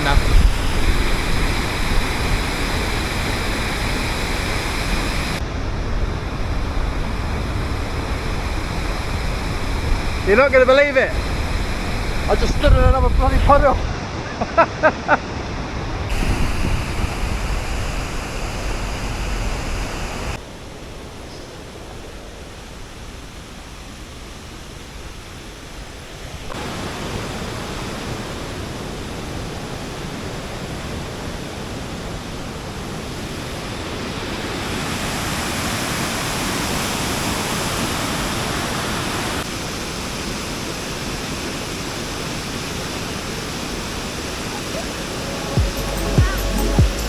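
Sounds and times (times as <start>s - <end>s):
waterfall rushing: 0.0s - 14.3s, 15.2s - 20.4s, 26.4s - 47.0s.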